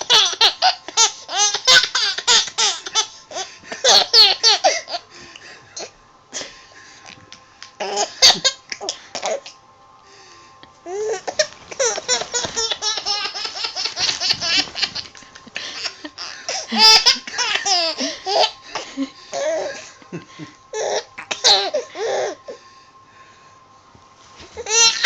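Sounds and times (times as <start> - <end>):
baby laughing: 0.0 - 5.0, 7.8 - 8.6, 10.9 - 18.6, 20.8 - 22.4, 24.6 - 25.0.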